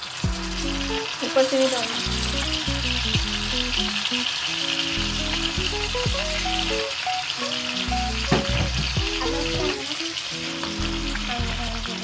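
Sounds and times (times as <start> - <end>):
onions frying in hot oil: 0.0 - 12.0.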